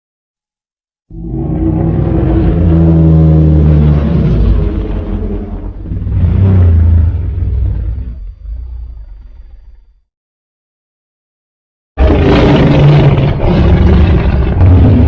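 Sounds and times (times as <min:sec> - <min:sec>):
deep rumbling monster roar: 0:01.1 - 0:10.0, 0:12.0 - 0:15.0.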